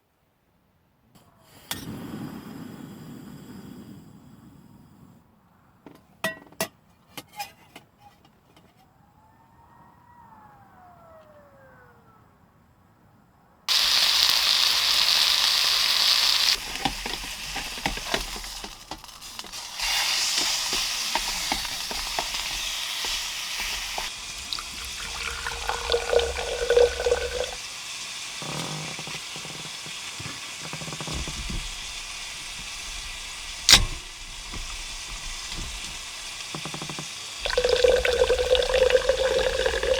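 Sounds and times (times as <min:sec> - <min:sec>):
food sizzling in a pan: 0:13.7 - 0:39.9
small clatters: 0:28.4 - 0:37.4.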